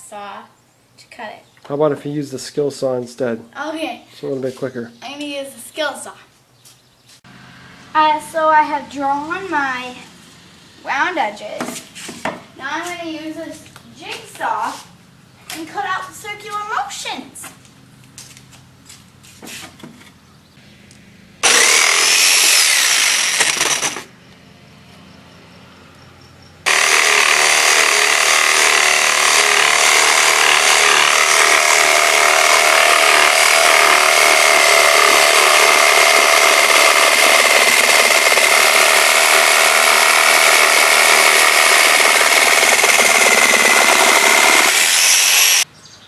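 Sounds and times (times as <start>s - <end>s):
motor whine: 20.6s - 45.6s
electric jigsaw cutting wood: 21.4s - 24.1s, 26.6s - 45.6s.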